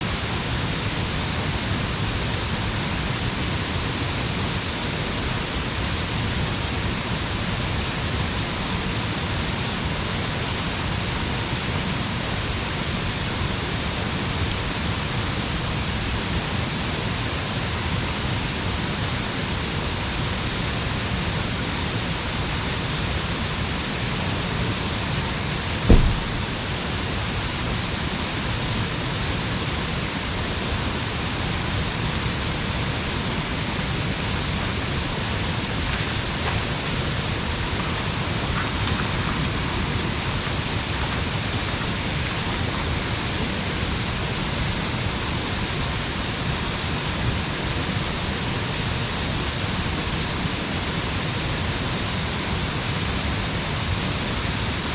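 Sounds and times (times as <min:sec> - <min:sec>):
steady rushing noise: 0:25.7 - 0:46.4
low thump: 0:25.9 - 0:26.7.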